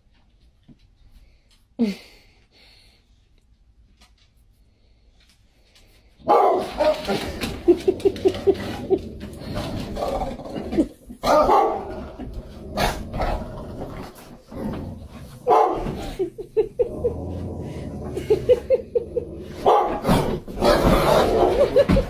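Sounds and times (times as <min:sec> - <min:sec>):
dog barking and yapping: 0:06.2 - 0:07.4, 0:11.2 - 0:12.0, 0:15.4 - 0:16.1, 0:19.6 - 0:21.9.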